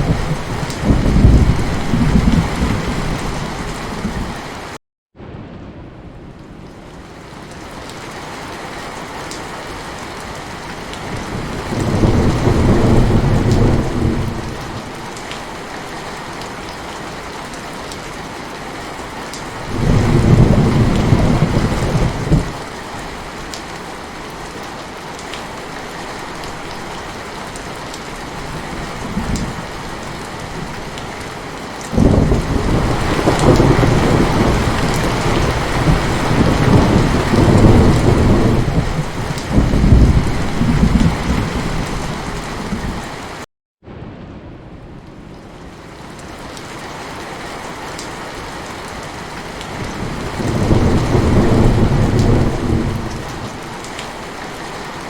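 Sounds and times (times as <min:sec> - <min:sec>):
rolling thunder rumble: 0:00.0 - 0:04.4, 0:11.0 - 0:14.9, 0:19.6 - 0:22.6, 0:31.9 - 0:43.0, 0:49.6 - 0:53.9
heavy rain falling: 0:00.0 - 0:55.0.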